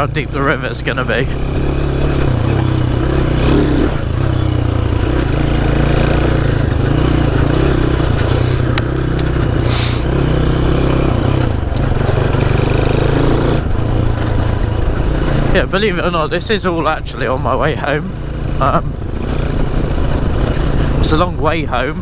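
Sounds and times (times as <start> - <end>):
motorcycle engine running: 0.0 - 22.0
brief hiss: 9.7 - 10.1.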